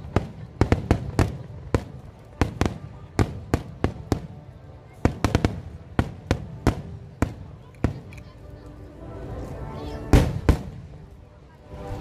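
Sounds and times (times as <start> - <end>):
fireworks bangs: 5.0 - 8.1, 10.1 - 10.8.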